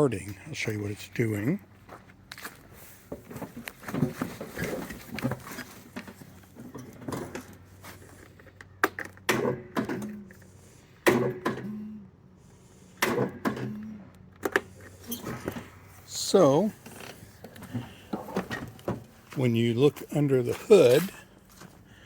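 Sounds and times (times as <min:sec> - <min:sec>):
electric starter clunk and hum: 0:03.1 - 0:12.2, 0:12.8 - 0:19.4.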